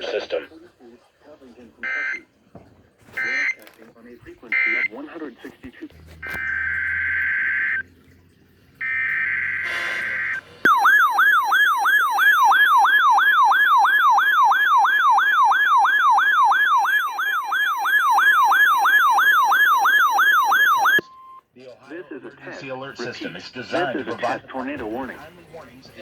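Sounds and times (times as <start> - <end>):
electronic warbling siren: 6.2 - 8.0, 8.8 - 21.0
buzzy digital header tones: 8.8 - 11.4.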